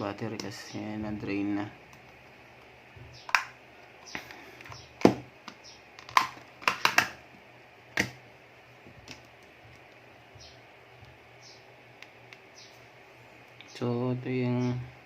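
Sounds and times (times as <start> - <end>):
small hard objects clicking: 5.5 - 7.2.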